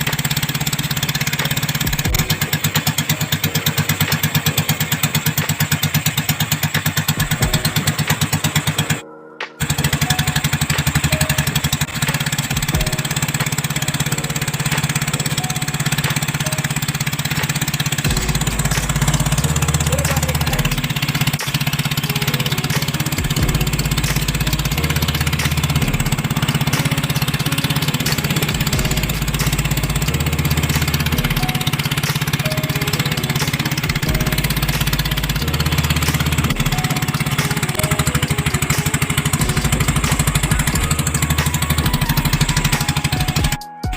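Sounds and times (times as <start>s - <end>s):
small engine running: 0.0s - 9.0s, 9.6s - 43.6s.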